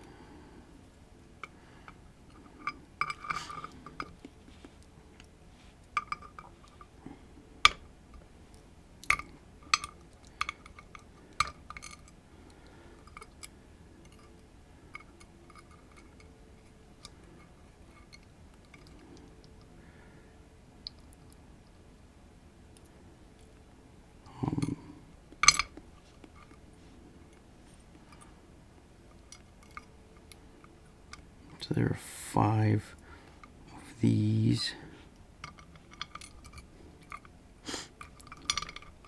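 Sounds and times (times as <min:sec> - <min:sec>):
metal lock parts clicking: 0:09.0 - 0:12.2, 0:35.4 - 0:37.3, 0:38.0 - 0:39.0.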